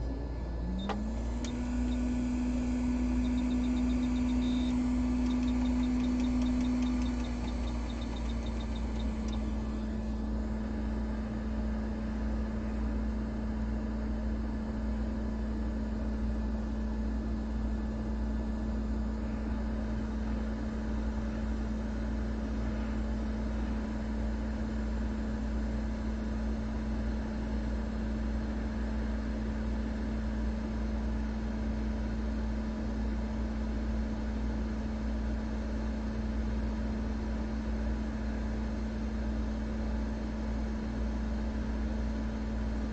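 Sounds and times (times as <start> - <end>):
hot-air blower humming: 0.0 - 30.2.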